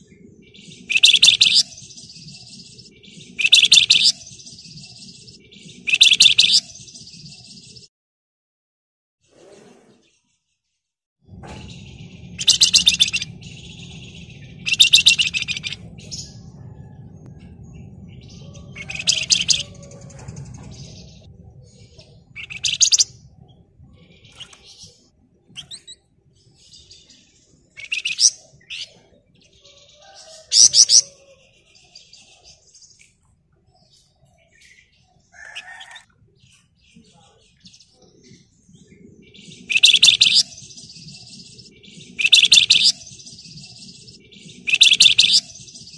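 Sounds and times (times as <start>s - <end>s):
bird chattering trills: 0.0s - 6.8s, 11.7s - 16.8s, 18.2s - 26.1s, 35.3s - 45.9s
faint bird chirps: 0.0s - 7.9s, 11.5s - 45.9s.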